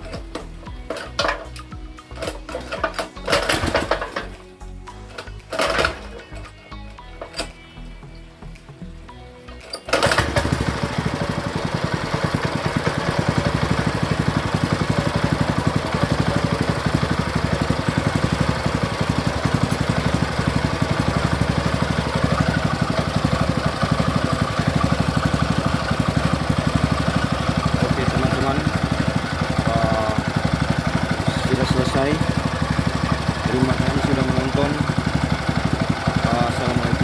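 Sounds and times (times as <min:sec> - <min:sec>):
small boat engine running: 0:09.9 - 0:37.0.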